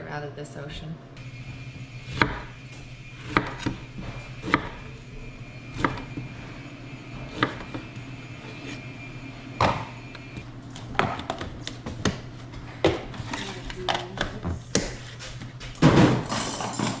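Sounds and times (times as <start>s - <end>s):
low hum: 0.0s - 15.1s
knife chopping on wooden board: 3.2s - 3.8s, 4.4s - 4.8s.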